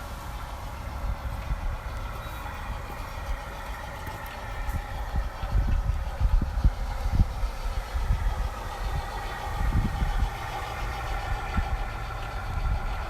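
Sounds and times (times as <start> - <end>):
model locomotive engine drone: 0.0 - 13.0
wind buffeting microphone: 0.0 - 13.0.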